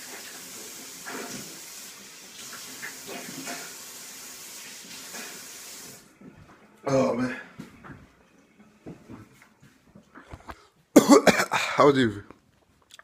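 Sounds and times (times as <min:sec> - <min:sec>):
running water hiss: 0:00.0 - 0:06.1
person coughing and gasping: 0:10.9 - 0:11.8.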